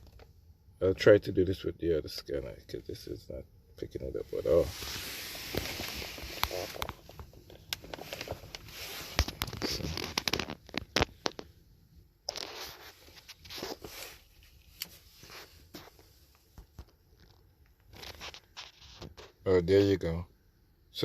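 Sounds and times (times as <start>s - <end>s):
handling noise rustling and scraping: 4.0s - 11.6s, 12.2s - 20.0s.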